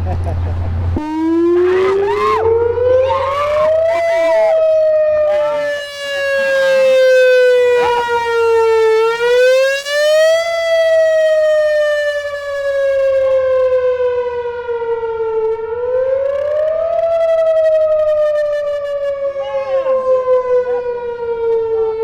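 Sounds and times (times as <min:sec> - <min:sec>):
warning siren wailing: 0:00.9 - 0:22.0.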